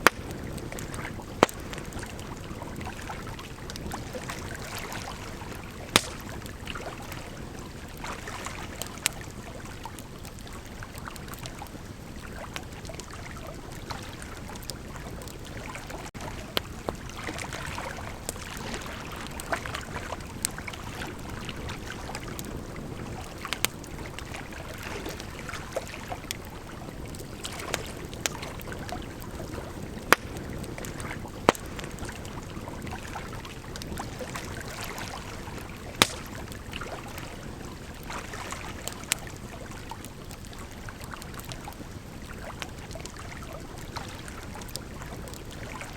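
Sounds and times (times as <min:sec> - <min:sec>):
sharp fire pops: 0:00.0 - 0:02.3, 0:05.7 - 0:06.6, 0:27.6 - 0:33.0, 0:35.8 - 0:36.7
bonfire hissing and crackling: 0:00.0 - 0:45.9.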